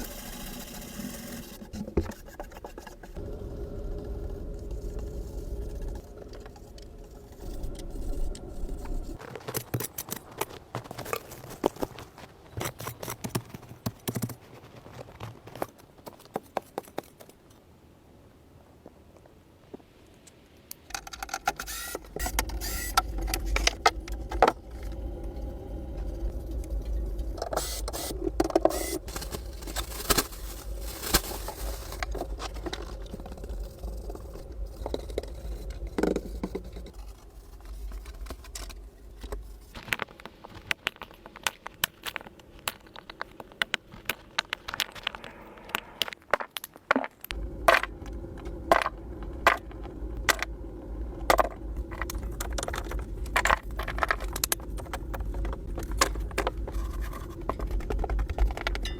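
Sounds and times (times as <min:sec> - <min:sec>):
irregular scraping: 0:00.0 - 0:09.4, 0:51.2 - 0:58.8
low steady rumble: 0:03.2 - 0:09.2, 0:22.1 - 0:39.8, 0:47.3 - 0:58.9.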